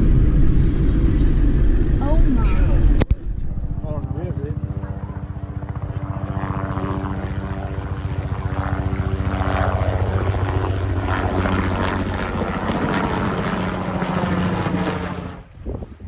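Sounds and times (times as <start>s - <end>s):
road and wind noise: 0.0s - 4.1s, 14.6s - 16.0s.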